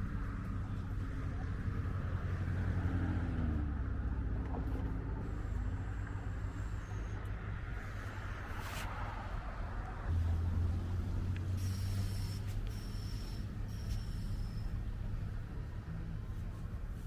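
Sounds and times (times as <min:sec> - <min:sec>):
passing motor vehicles: 0:00.0 - 0:17.0.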